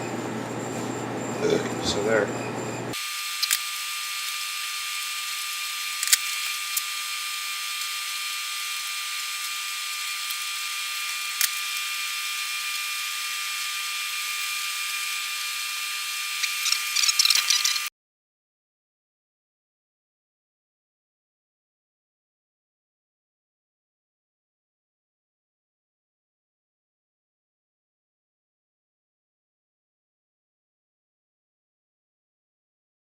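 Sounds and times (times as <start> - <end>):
sharp clicks: 16.4 - 17.9.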